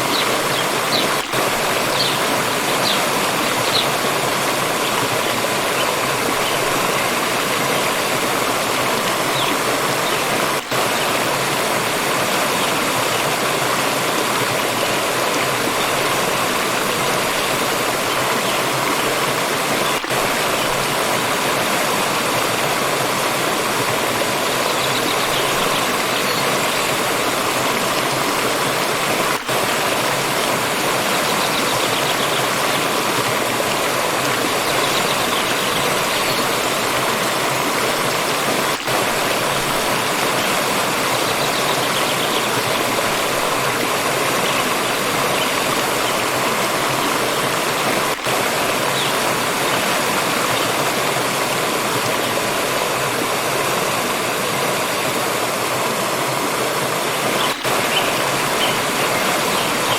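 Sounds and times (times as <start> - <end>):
stream water rushing and splashing: 0.0 - 59.9.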